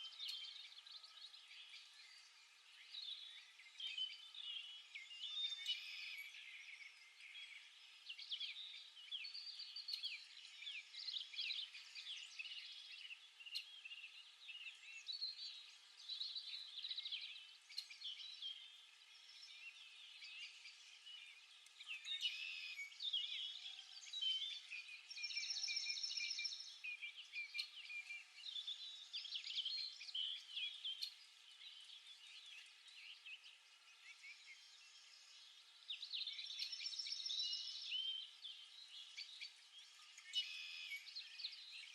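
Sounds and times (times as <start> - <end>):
small birds chirping: 0.0 - 41.9.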